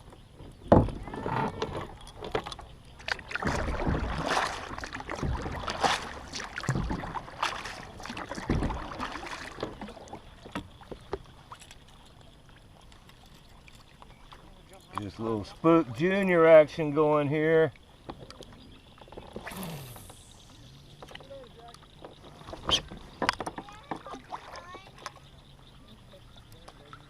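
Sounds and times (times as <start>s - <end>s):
hollow knocks on kayak: 8.4s - 8.8s.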